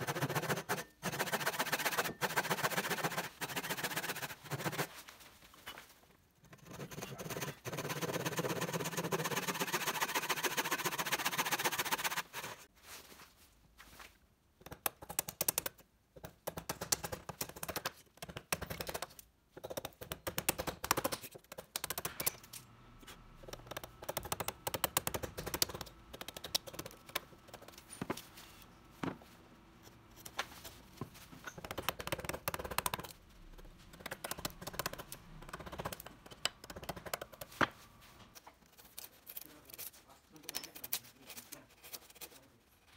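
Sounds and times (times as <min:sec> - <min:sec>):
hand tool rasping wood: 0:00.0 - 0:04.9, 0:06.6 - 0:12.6.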